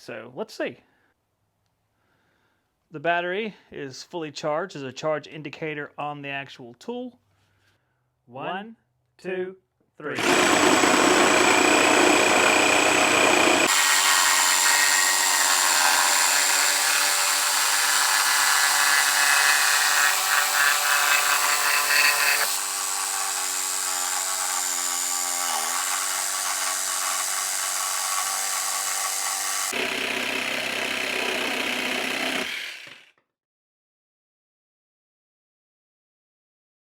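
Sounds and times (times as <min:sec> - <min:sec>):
reciprocating saw whining: 0:10.2 - 0:32.9.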